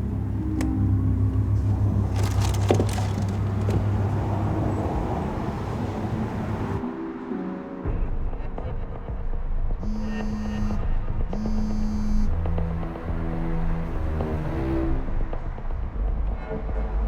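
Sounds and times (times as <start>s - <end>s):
car rumble: 0.0s - 6.8s
clicks and rattles: 1.4s - 6.8s.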